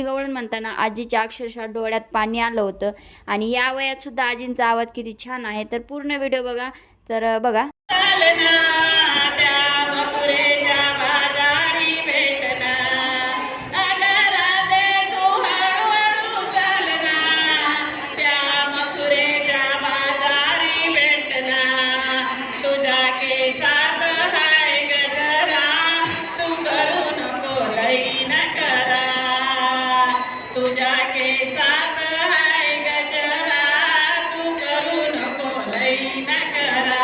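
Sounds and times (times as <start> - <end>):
elderly woman singing: 7.9 - 37.0
sharp percussive strikes: 11.2 - 37.0.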